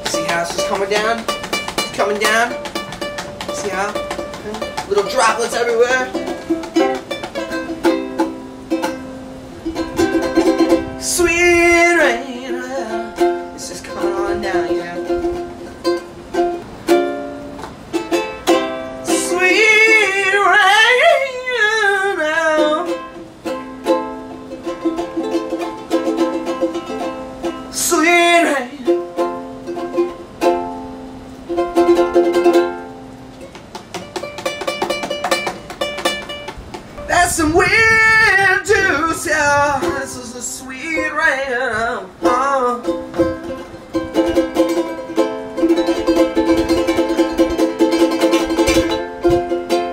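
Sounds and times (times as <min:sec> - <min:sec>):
wordless singing voice: 0:00.0 - 0:02.6, 0:03.4 - 0:06.9, 0:11.0 - 0:15.3, 0:19.0 - 0:23.1, 0:27.7 - 0:29.1, 0:37.0 - 0:43.6
ukulele picked: 0:00.0 - 0:49.9.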